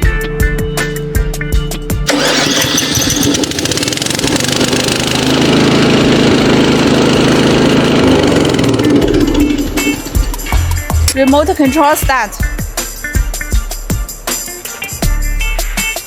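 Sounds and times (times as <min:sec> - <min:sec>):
lawn mower engine running: 0:02.1 - 0:12.0.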